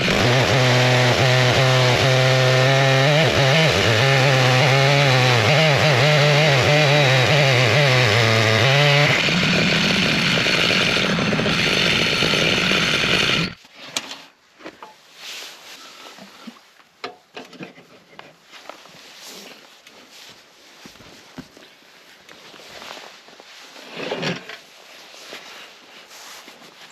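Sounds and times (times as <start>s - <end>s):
chainsaw cutting log: 0.0s - 13.6s.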